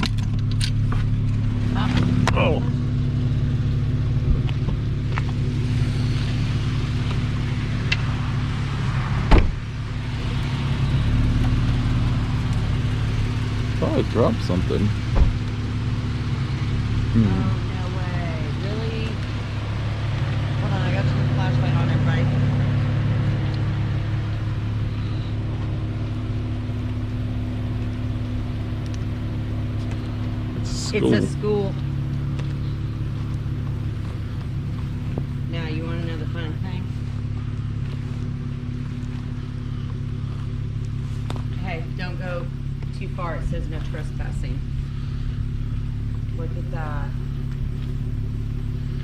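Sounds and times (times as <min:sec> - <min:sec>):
car engine idling: 0:00.0 - 0:49.0
sharp thump: 0:09.3 - 0:09.6, 0:15.1 - 0:15.5.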